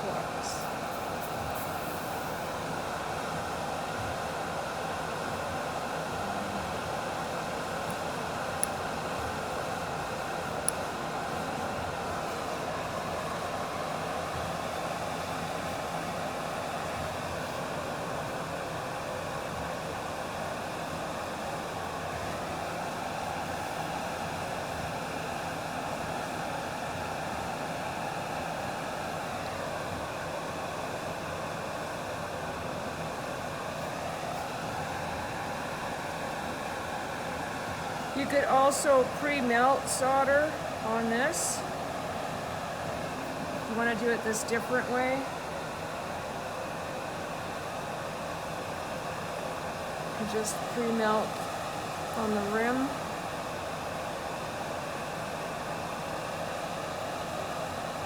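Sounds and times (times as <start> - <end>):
gas torch hissing: 0.1 - 13.8.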